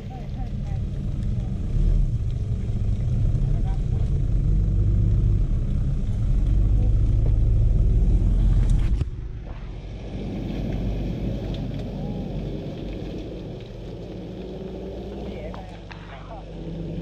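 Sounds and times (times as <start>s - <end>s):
quieter vehicle noise: 0.0s - 17.0s
vehicle low rumble: 0.0s - 17.0s.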